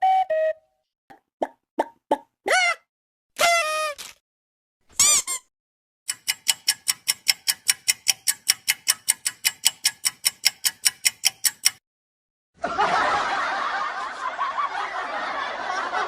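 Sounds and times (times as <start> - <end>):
sharp even ticks: 6.1 - 11.8.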